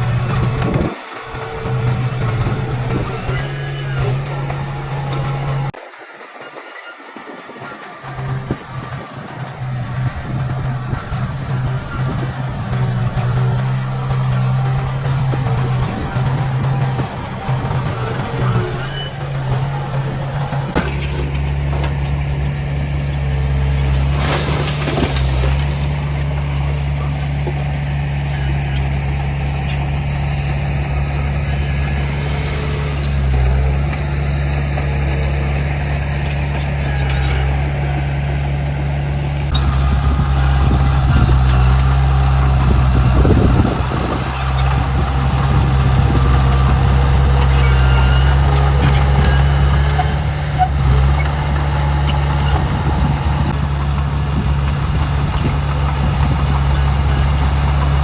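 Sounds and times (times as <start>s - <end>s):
heavy diesel machinery droning: 0.0s - 58.0s.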